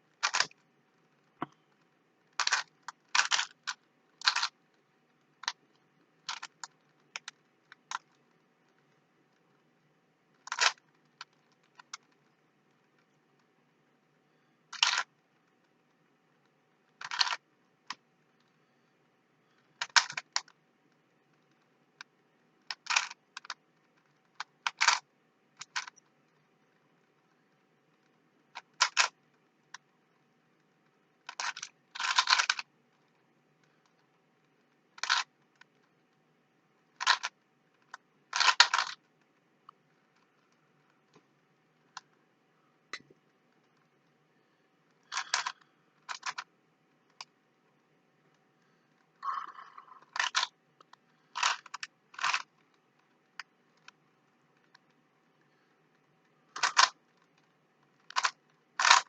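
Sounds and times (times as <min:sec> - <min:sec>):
puzzle cube clicking: 0:00.1 - 0:09.5, 0:10.3 - 0:13.5, 0:14.7 - 0:15.2, 0:16.4 - 0:18.6, 0:19.6 - 0:20.6, 0:21.4 - 0:26.4, 0:28.0 - 0:29.9, 0:31.2 - 0:33.2, 0:33.9 - 0:35.9, 0:36.9 - 0:41.2, 0:45.1 - 0:46.5, 0:49.2 - 0:54.0, 0:56.5 - 0:59.0.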